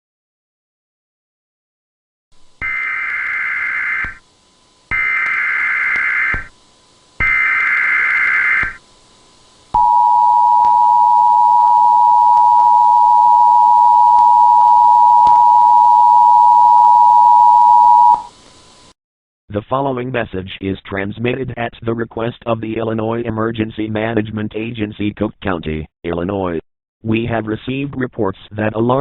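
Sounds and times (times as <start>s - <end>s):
data header noise bursts: 2.6s - 4.2s, 4.9s - 6.5s, 7.2s - 8.8s.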